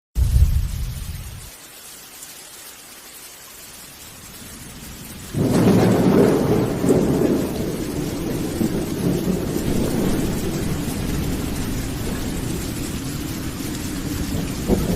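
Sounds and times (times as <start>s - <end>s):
loud thunder clap rumbling: 0.2s - 1.5s, 5.2s - 14.9s
low thunder roll: 0.2s - 1.5s, 5.2s - 14.9s
rain falling: 0.2s - 14.9s.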